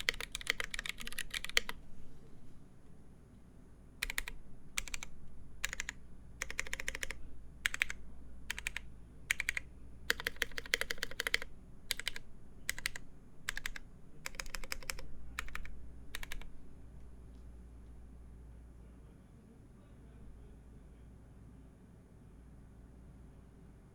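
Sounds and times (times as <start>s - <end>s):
mechanical keyboard typing: 0.0s - 1.8s, 4.0s - 16.5s.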